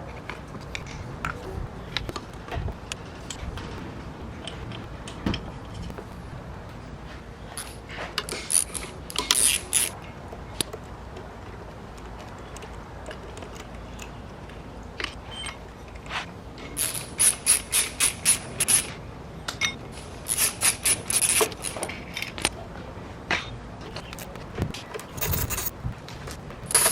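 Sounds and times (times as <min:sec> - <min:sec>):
ratchet wrench clicking: 0:07.6 - 0:10.0, 0:16.8 - 0:18.9, 0:20.3 - 0:22.4, 0:26.6 - 0:26.9.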